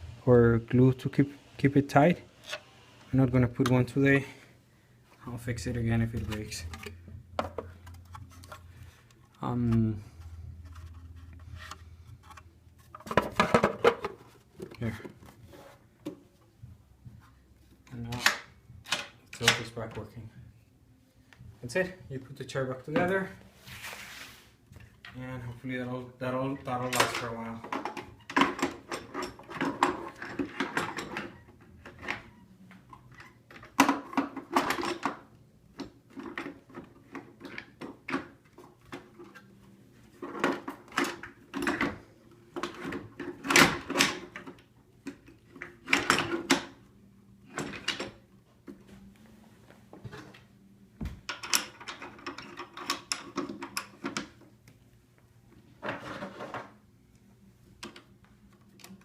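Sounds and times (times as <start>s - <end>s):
chair parts clicking and rattling: 5.9s - 9.9s, 26.7s - 46.9s, 47.5s - 48.8s, 51.1s - 54.5s.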